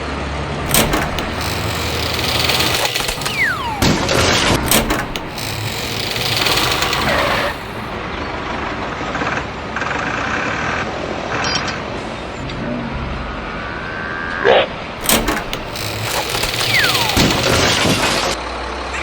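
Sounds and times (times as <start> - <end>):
toy vehicle engine: 0.6 - 7.9, 15.0 - 18.4
short high-pitched tones: 0.7 - 7.8.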